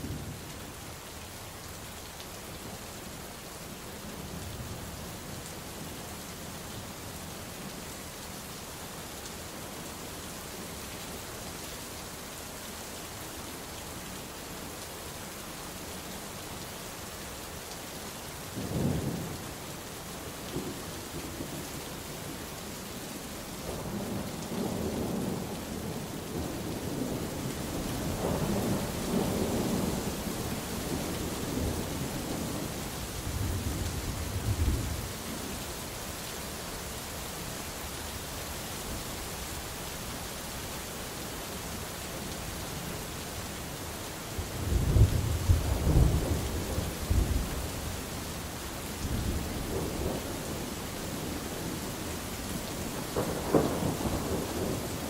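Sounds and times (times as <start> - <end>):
steady rain falling: 0.0 - 55.0
rolling thunder: 53.0 - 55.0.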